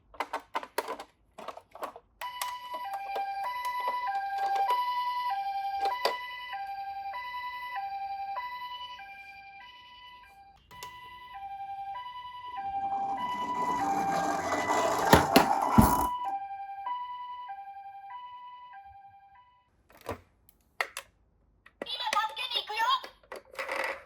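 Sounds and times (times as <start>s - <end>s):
sharp plastic clacks: 0.0s - 2.6s
toy two-tone siren: 2.2s - 19.7s
toy rattling rolling down slope: 12.8s - 16.1s.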